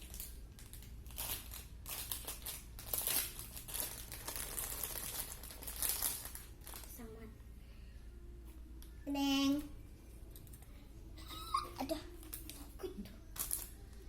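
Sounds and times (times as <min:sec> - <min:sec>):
plastic packaging crinkling: 0:00.0 - 0:07.1, 0:12.1 - 0:14.0.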